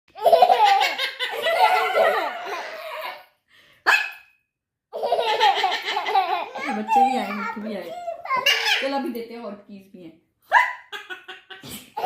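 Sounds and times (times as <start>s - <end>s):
children laughing: 0.1s - 3.4s, 4.9s - 8.9s
parrot laughing: 10.7s - 12.0s.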